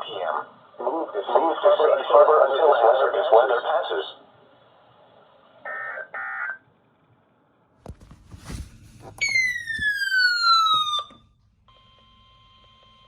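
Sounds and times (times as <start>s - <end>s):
descending siren-like electronic tone: 9.2s - 11.2s.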